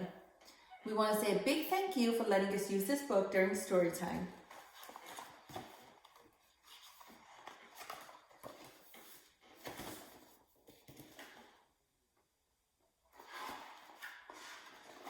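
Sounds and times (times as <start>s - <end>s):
book pages rustling: 4.0s - 11.7s, 13.1s - 15.0s.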